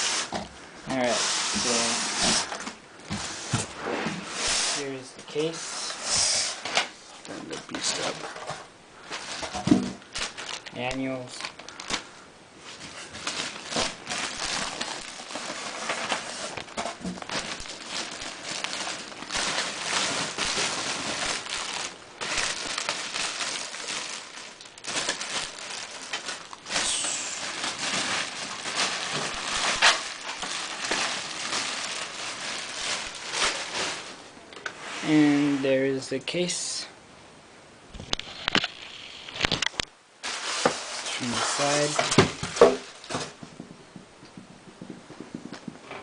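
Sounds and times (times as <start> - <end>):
packaging rustling: 5.3 - 34.3, 38.0 - 43.4.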